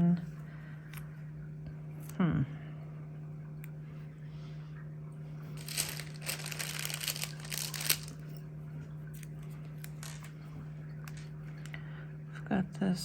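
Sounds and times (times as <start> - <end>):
paper sheets crinkling and rustling: 5.6 - 8.2, 9.8 - 10.3.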